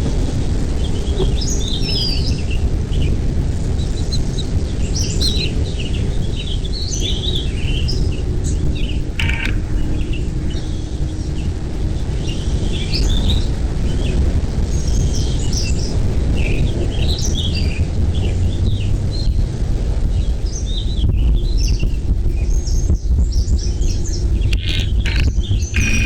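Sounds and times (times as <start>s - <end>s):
steady low rumble: 0.0s - 26.0s
birds chirping: 6.4s - 11.5s, 22.6s - 26.0s.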